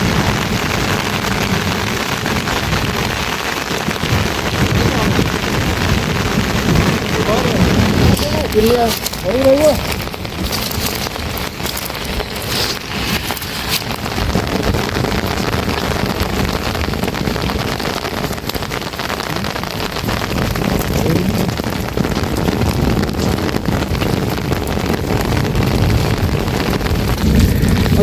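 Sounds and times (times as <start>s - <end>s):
heavy rain pouring: 0.0s - 28.0s
low rumble: 26.8s - 28.0s.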